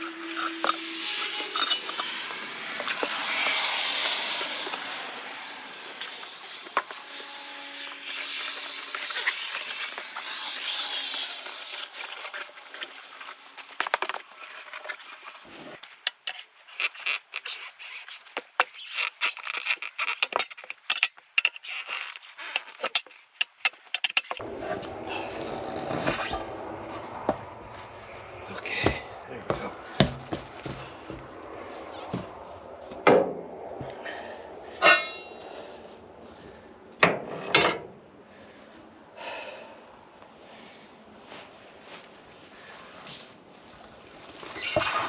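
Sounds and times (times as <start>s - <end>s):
steel tools clinking on metal rim: 0.0s - 7.1s, 7.9s - 24.4s
scraping: 0.0s - 24.4s.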